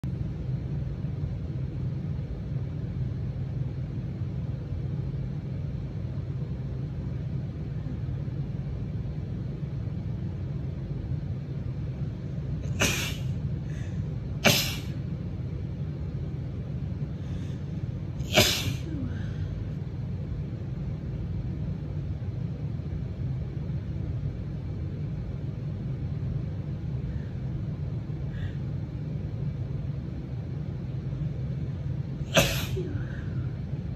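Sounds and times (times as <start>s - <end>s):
low hum: 0.0s - 33.9s
woman sneezing: 12.6s - 13.4s, 14.4s - 15.0s, 18.2s - 19.4s, 32.3s - 33.4s.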